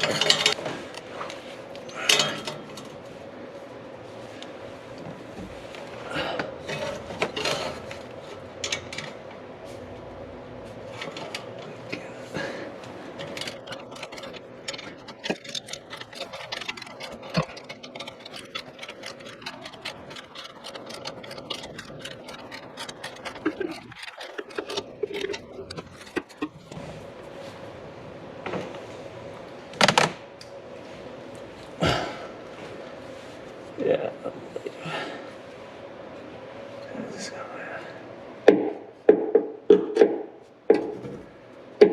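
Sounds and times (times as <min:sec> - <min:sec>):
faint steady hum: 0:00.0 - 0:41.9
tools and metal hardware clinking: 0:13.2 - 0:26.6.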